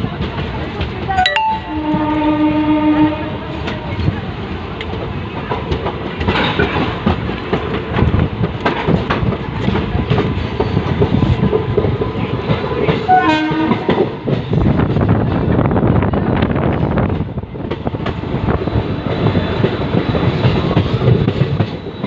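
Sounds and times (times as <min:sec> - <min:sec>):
train rumbling on track: 0:00.0 - 0:22.0
brief pitched tone: 0:01.2 - 0:02.0
wheel clatter over rail joints: 0:03.6 - 0:15.5.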